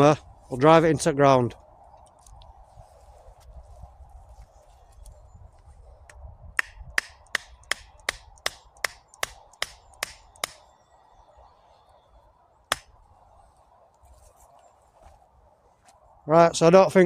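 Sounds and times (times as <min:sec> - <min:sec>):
hammer striking a stake: 0:06.6 - 0:10.6, 0:12.7 - 0:13.0.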